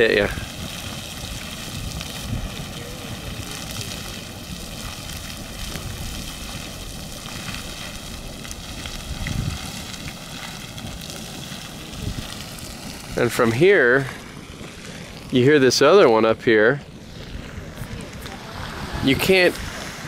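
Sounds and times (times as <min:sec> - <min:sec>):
geyser hissing rush of water: 0:00.0 - 0:20.0.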